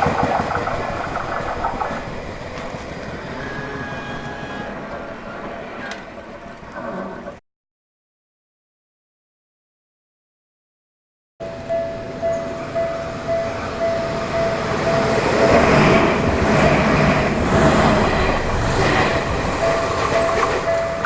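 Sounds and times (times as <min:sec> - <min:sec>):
train rumble and wheel noise: 0:00.0 - 0:07.4, 0:11.4 - 0:21.0
level crossing bell ringing: 0:11.4 - 0:15.6, 0:19.0 - 0:21.0.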